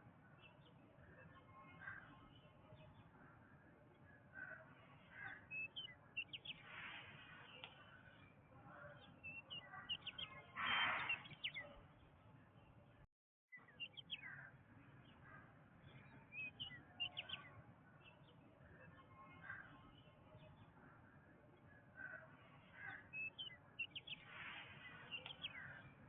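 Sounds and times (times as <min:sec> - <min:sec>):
harsh bird call: 0:09.6 - 0:11.6.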